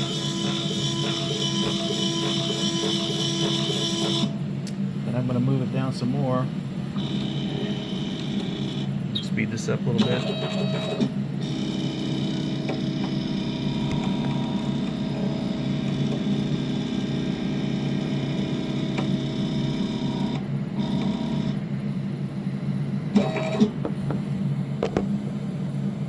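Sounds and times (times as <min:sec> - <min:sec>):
stepper motors whining: 0:00.0 - 0:04.4, 0:07.0 - 0:21.7.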